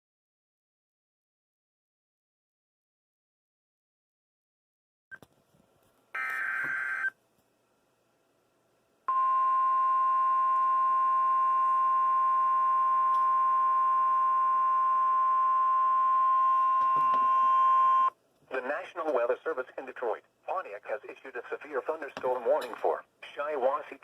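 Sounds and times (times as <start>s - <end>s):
steady alarm tone: 9.1s - 18.1s.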